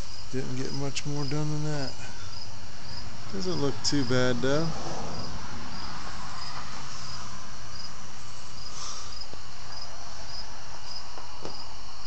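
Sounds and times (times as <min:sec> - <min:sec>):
constant hiss: 0:00.0 - 0:12.0
cricket chirping: 0:00.0 - 0:12.0.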